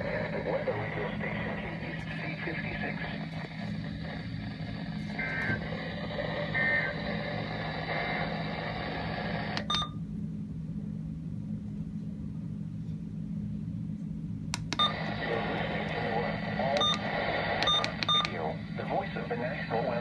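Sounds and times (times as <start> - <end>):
radio hiss: 0.0 - 9.6, 14.9 - 20.0
radio hum: 0.0 - 9.8, 14.6 - 20.0
clicks: 14.6 - 15.2, 16.8 - 18.4.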